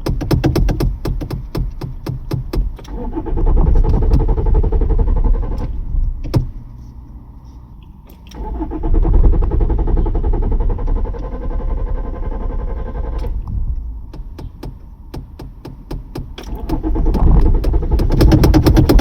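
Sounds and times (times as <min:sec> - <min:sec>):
car starter cranking engine: 0:00.0 - 0:06.7, 0:07.9 - 0:19.0
sharp clicks: 0:13.0 - 0:19.0.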